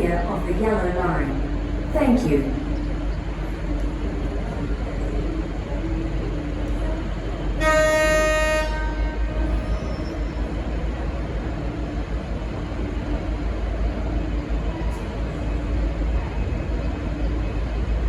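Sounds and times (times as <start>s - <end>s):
diesel locomotive rumbling: 0.0s - 18.0s
locomotive air horn blast: 7.6s - 10.0s.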